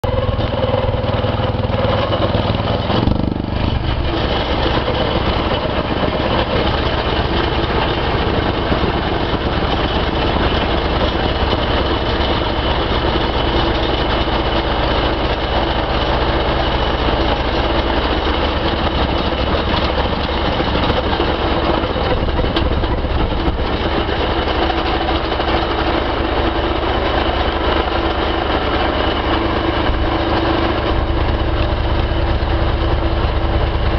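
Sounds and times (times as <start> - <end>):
machine engine running: 0.0 - 33.9
plate compactor vibrating on ground: 0.0 - 33.9.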